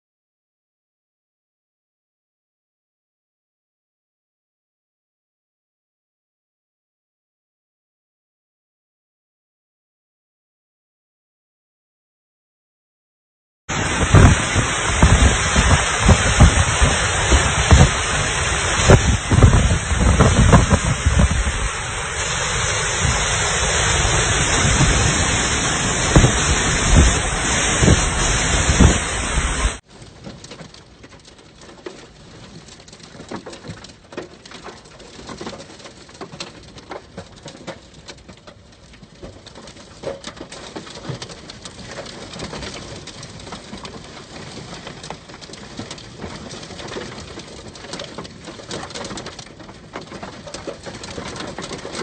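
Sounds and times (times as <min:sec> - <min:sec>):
wind buffeting microphone: 0:13.7 - 0:29.8
heavy rain: 0:13.7 - 0:52.0
light rain with drips: 0:13.7 - 0:52.0.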